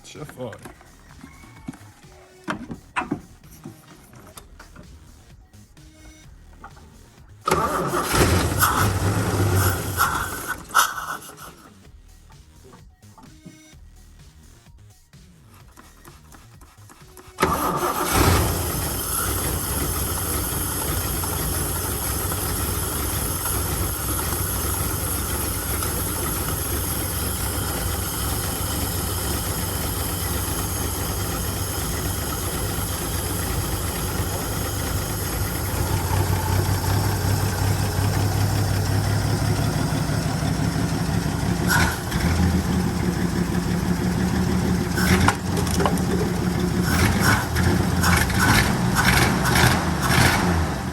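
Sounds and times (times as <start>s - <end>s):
car engine running: 2.8s - 13.6s, 17.1s - 50.9s.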